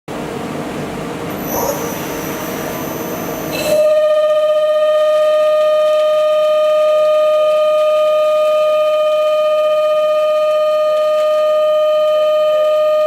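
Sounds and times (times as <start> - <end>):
metal lathe running: 1.3 - 3.9
high whine of cutting tool: 1.3 - 4.8.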